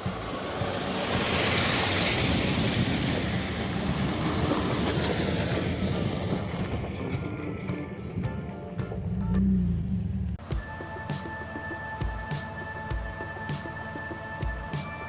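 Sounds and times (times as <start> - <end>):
loud rushing noise: 0.0 - 6.7
truck engine rumbling: 0.0 - 15.0.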